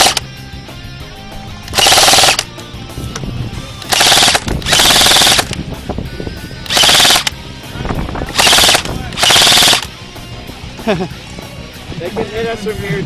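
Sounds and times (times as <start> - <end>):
airsoft gun automatic bursts: 0.0 - 0.2, 1.7 - 2.5, 3.8 - 5.6, 6.7 - 7.4, 8.4 - 9.9.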